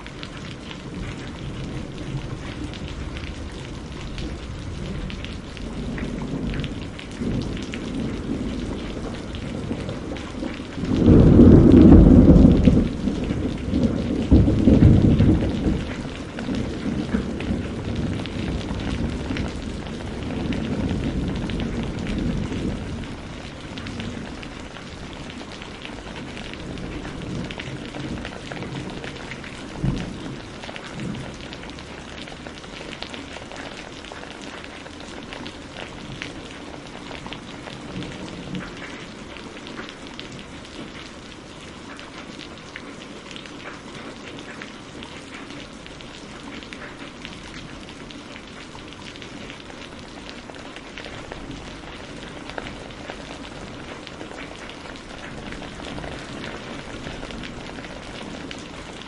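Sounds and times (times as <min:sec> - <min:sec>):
thunder rumbling: 0:00.0 - 0:41.4, 0:44.9 - 0:59.0
rain pattering: 0:00.0 - 0:59.0
sharp thunder crack: 0:10.8 - 0:16.0.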